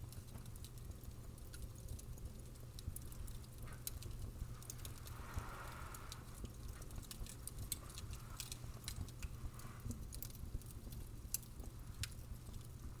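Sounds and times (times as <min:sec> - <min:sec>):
fire crackling and popping: 0:00.0 - 0:13.0
soft hisses: 0:04.8 - 0:06.4.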